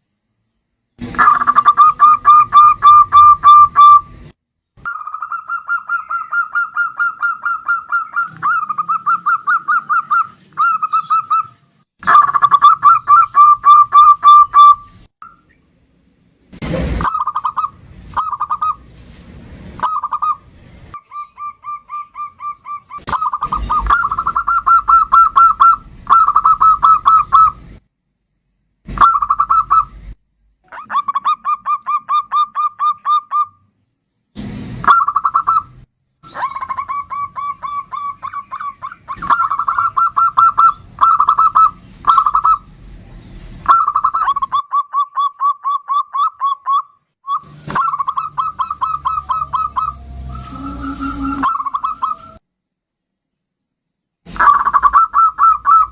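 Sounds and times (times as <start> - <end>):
dove cooing: 1.2 - 4.0, 4.9 - 14.8, 21.1 - 27.6, 36.3 - 42.7, 43.7 - 52.4, 54.4 - 55.9.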